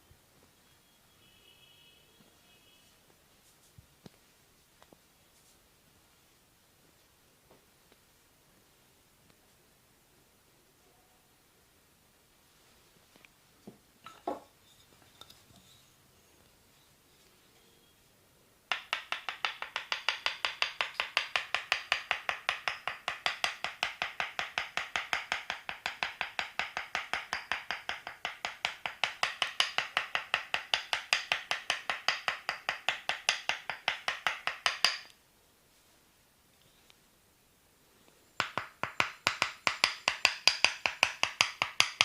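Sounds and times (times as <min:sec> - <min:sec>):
percussive massage strikes: 0:18.7 - 0:35.2, 0:38.4 - 0:42.0.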